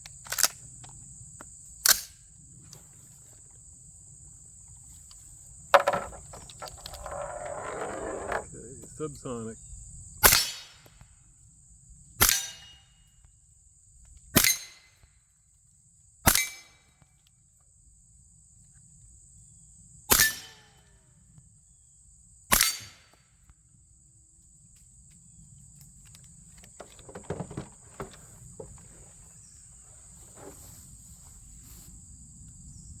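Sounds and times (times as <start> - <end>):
faint clicks and knocks: 25.8 - 29.0.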